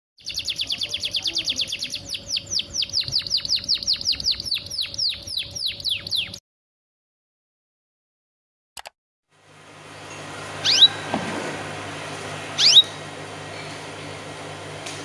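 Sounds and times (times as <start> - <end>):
canary singing trill: 0.2 - 6.4, 10.1 - 11.1, 12.6 - 13.7.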